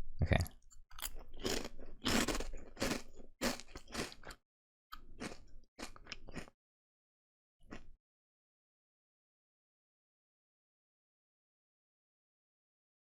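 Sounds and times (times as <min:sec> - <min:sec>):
crunchy snack chewing: 0:00.9 - 0:04.4, 0:05.0 - 0:06.6.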